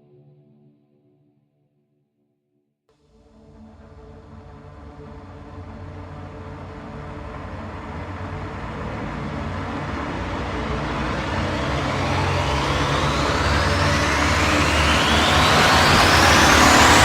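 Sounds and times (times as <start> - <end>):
rising whine: 3.6 - 17.0
rumbling rushing sound: 5.8 - 17.0.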